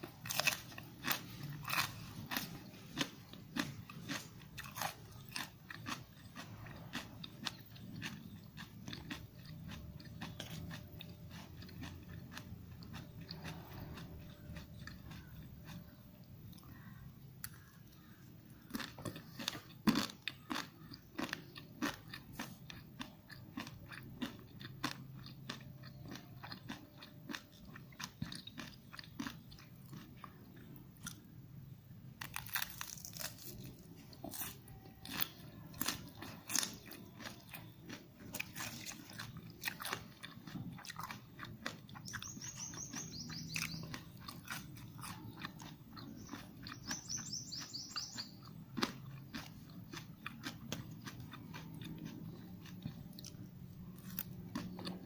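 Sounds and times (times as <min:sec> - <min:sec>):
person crunching noodles: 0:00.0 - 0:31.3, 0:32.1 - 0:55.0
bird chirping: 0:24.6 - 0:55.0.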